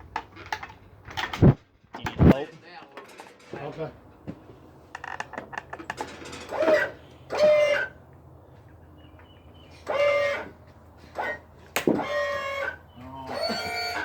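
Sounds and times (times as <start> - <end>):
chickens calling: 6.0 - 14.0.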